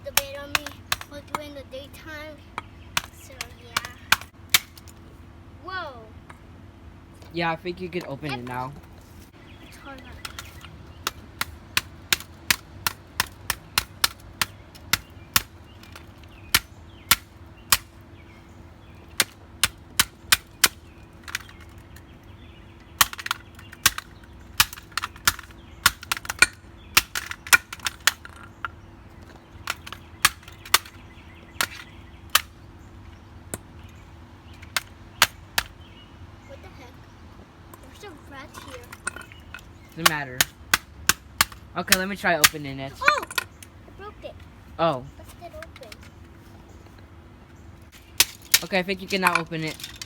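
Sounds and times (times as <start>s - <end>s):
hammer striking plastic: 10.2s - 17.9s, 23.0s - 28.4s, 29.6s - 31.0s, 40.0s - 42.6s.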